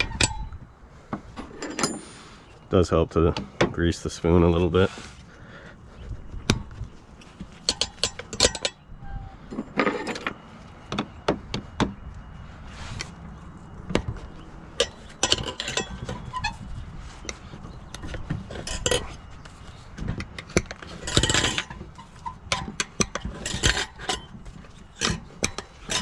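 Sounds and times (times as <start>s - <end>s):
metal tire spoons clinking: 7.6s - 8.8s, 14.8s - 16.6s, 18.5s - 19.4s, 20.9s - 26.0s
metal scraping on wheel rim: 14.8s - 26.0s.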